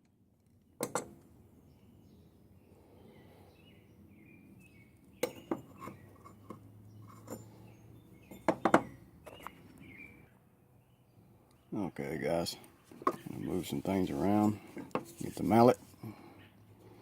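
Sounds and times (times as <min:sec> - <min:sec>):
metal hand tools clinking: 0:13.1 - 0:15.8.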